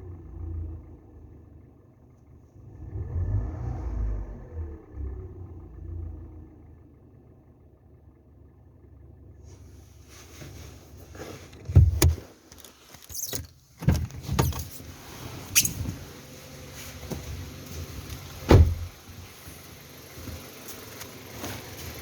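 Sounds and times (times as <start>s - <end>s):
car engine humming: 0.0s - 22.0s
loud thumps: 18.4s - 18.9s.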